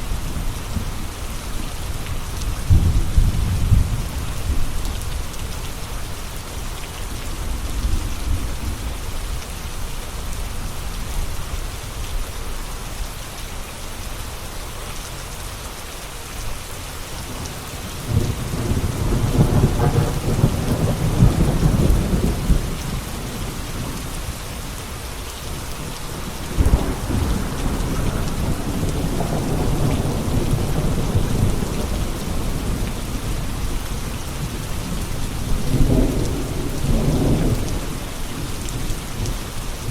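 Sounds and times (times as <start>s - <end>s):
steady rain falling: 0.0s - 39.9s
thunder rumbling: 2.5s - 5.2s, 17.3s - 24.1s, 25.5s - 39.9s
sharp thunderclap: 18.1s - 22.8s, 26.1s - 33.4s.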